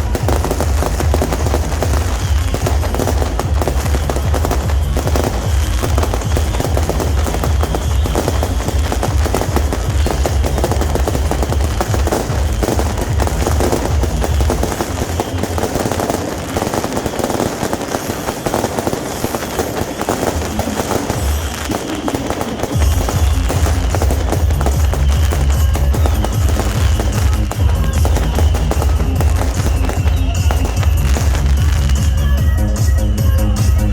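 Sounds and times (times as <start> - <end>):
fireworks crackling: 0.0 - 33.9
loud music with heavy bass: 0.0 - 33.9.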